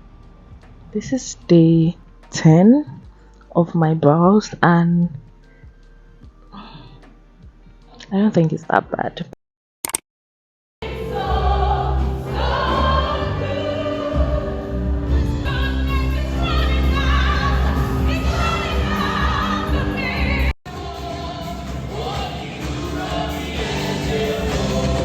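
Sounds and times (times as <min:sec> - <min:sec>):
song with singing voices: 0:10.8 - 0:25.0.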